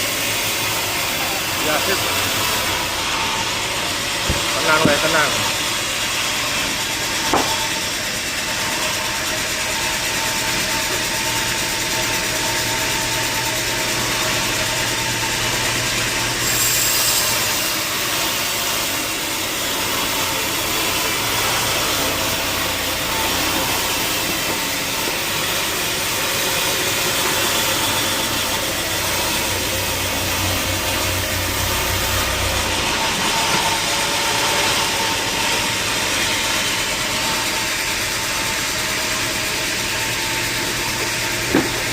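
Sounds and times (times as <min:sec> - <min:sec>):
saw noise: 0:00.0 - 0:41.9
sawmill engine drone: 0:00.0 - 0:41.9.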